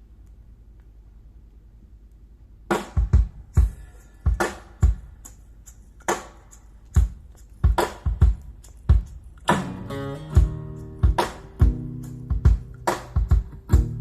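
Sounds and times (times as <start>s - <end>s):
faint low hum: 0.0s - 7.7s
kick drum and snare hits: 2.7s - 5.1s, 10.4s - 14.0s.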